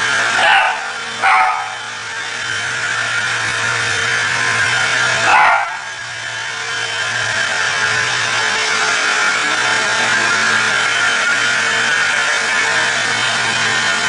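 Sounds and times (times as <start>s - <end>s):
vacuum cleaner running: 0.0s - 14.0s
dog barking: 0.4s - 1.8s, 5.2s - 5.9s.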